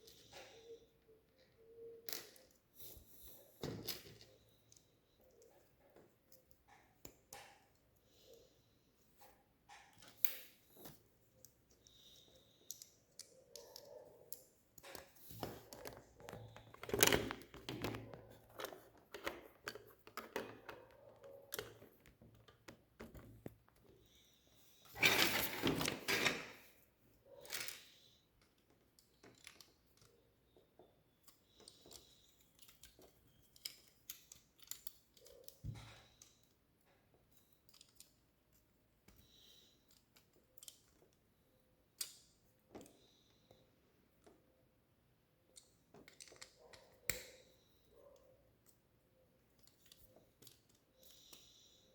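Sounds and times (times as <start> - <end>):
plastic pieces clicking together: 27.4 - 36.6, 37.4 - 41.2, 45.5 - 47.4.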